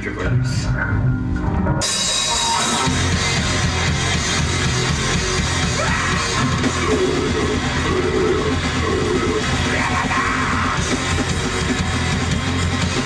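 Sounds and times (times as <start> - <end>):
bass guitar: 0.0 - 13.0
distorted electric guitar: 0.0 - 13.0
drums: 0.0 - 13.0
shouted vocals: 5.6 - 11.0.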